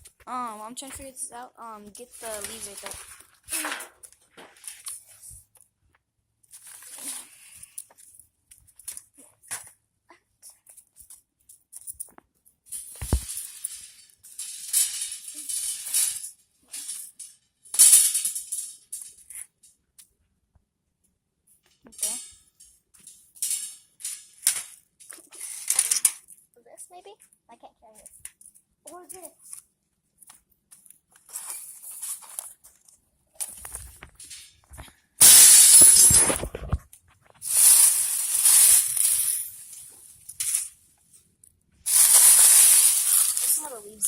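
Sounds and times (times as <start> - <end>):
dry leaves rustling: 2.1 - 3.1, 41.9 - 44.0.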